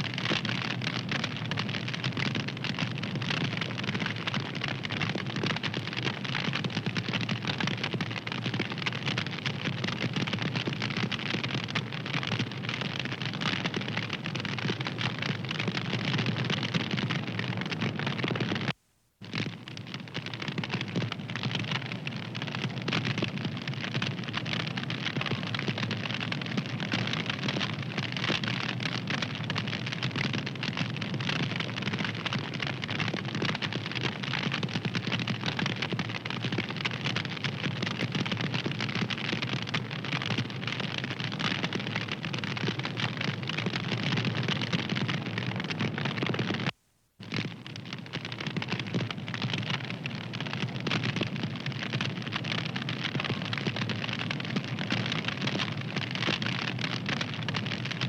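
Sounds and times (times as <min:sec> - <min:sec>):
wood fire crackling: 0:00.0 - 0:57.7.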